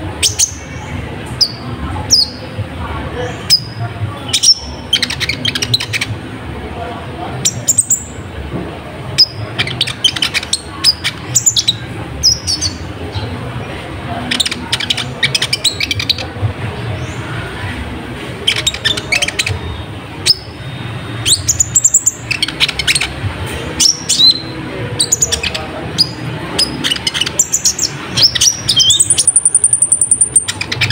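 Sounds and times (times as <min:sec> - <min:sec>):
sunbird chirping and trilling: 0:03.2 - 0:06.2, 0:07.4 - 0:08.2, 0:09.2 - 0:13.4, 0:14.2 - 0:16.2, 0:18.4 - 0:30.9.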